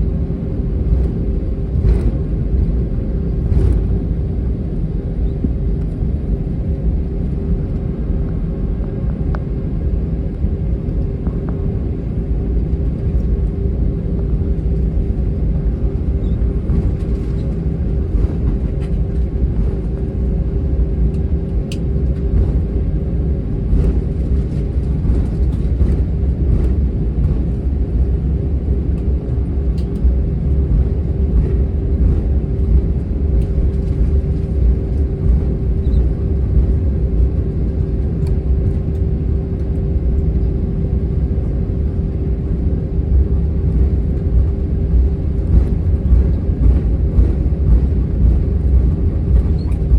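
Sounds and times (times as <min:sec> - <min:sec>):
jet engines rumbling: 0:00.0 - 0:49.9.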